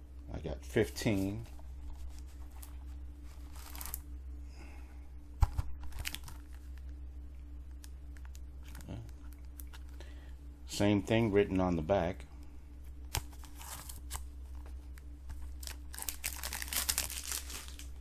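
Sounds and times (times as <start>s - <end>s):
paper and plastic crinkling: 1.8s - 4.0s, 15.3s - 18.0s.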